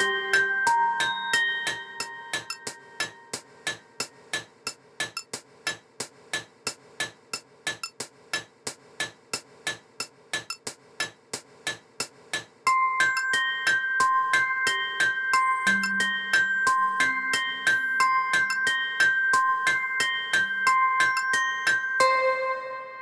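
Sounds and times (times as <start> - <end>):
bell-like note: 0.0 - 4.1, 12.9 - 23.0
clock-tick percussion clicks: 0.0 - 22.3.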